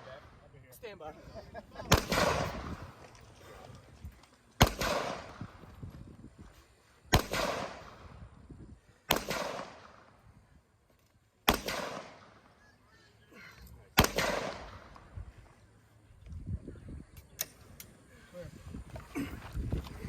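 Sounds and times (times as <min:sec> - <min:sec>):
gunshots with echo: 0:01.9 - 0:02.9, 0:04.6 - 0:05.5, 0:07.1 - 0:08.0, 0:09.1 - 0:10.0, 0:11.5 - 0:12.3, 0:14.0 - 0:15.0.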